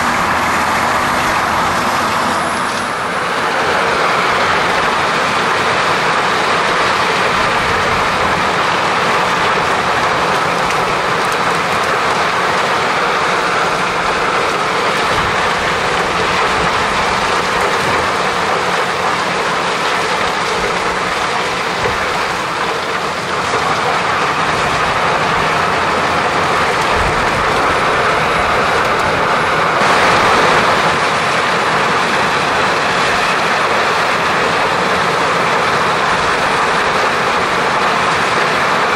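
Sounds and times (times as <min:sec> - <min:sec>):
heavy machinery running: 0:00.0 - 0:38.9.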